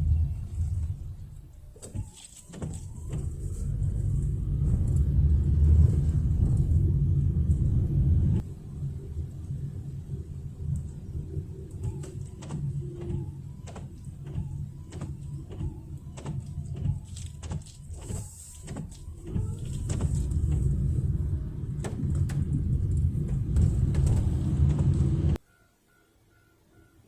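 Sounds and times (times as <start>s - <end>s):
train passing with low rumble: 0.0s - 1.5s, 3.1s - 13.5s, 19.1s - 25.6s.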